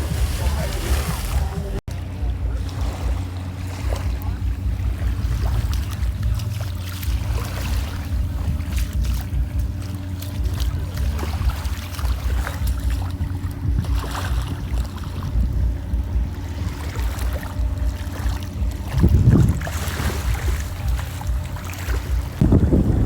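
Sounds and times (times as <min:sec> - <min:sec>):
jet ski engine running: 0:00.0 - 0:23.0
water noise: 0:00.0 - 0:23.0
wind buffeting microphone: 0:00.0 - 0:23.0
rush of wind and spray: 0:22.2 - 0:23.0.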